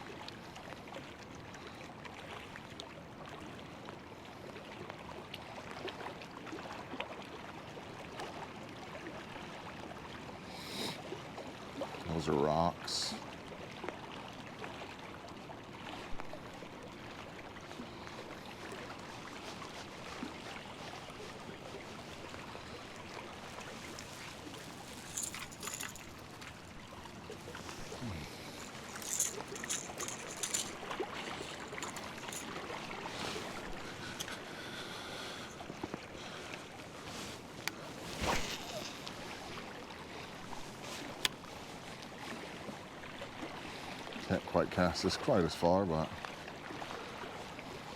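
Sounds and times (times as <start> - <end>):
water noise: 11.2 - 44.2.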